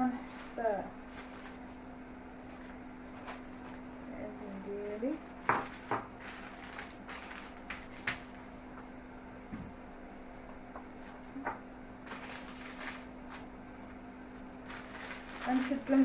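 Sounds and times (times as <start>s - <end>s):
baking paper rustling: 0.0s - 8.7s, 12.0s - 16.0s
steady low hum: 0.0s - 16.0s.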